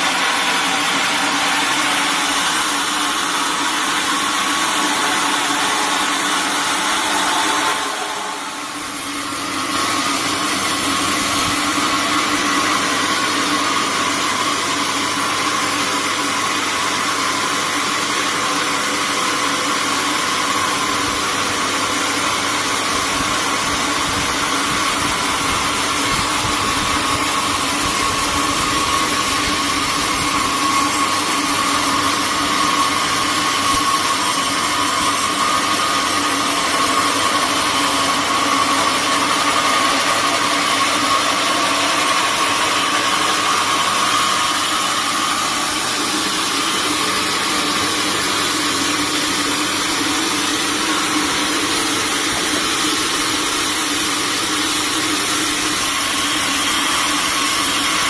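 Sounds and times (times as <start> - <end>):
sawmill machinery drone: 0.0 - 58.0.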